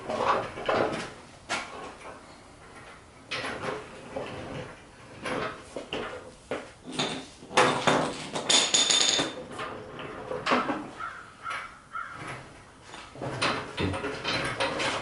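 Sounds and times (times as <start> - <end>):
high ringing metal clatter: 6.9 - 9.4
metal knocking and clanking: 6.9 - 15.0.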